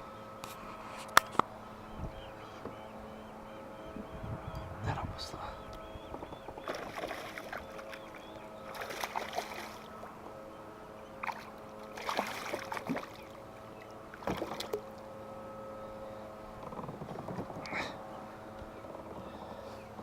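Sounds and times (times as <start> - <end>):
steady hum: 0.0 - 20.0
water splashing around kayak: 6.6 - 10.1, 11.2 - 15.1.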